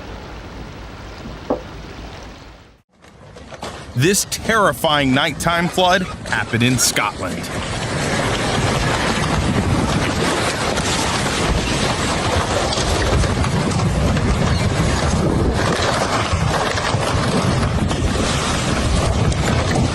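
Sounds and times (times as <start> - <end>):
floodwater rushing: 3.9 - 13.2.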